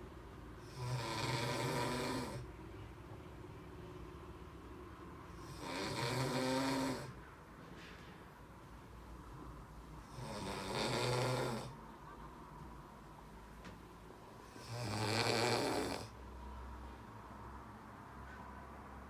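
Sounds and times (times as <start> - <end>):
man snoring: 0.6 - 2.5, 5.3 - 7.2, 10.0 - 11.8, 14.4 - 16.2.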